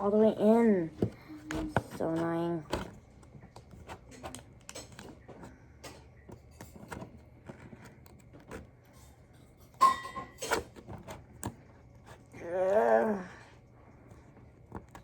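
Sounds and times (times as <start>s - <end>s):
card clicking into plastic case: 0.8s - 8.7s.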